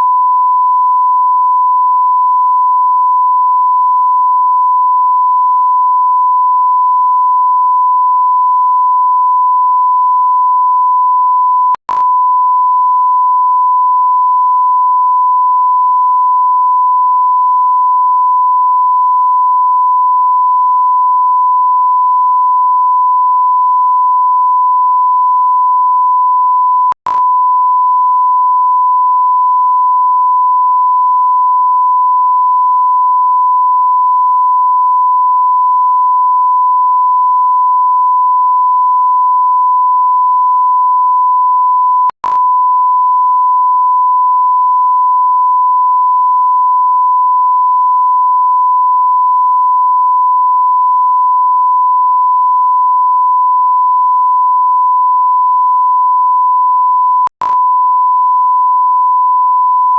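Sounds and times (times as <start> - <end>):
click: 11.8 - 12.1, 26.9 - 27.3, 42.1 - 42.5, 57.3 - 57.7.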